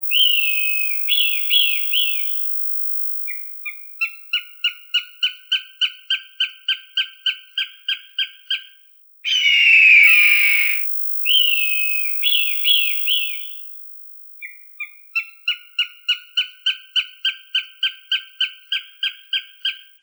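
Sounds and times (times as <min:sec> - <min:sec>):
hawk calling: 0:09.3 - 0:10.8
hawk screaming: 0:09.3 - 0:10.8.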